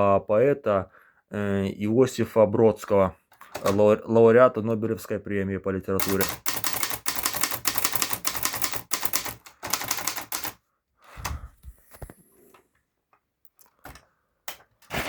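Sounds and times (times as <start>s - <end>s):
manual typewriter typing: 6.0s - 10.6s.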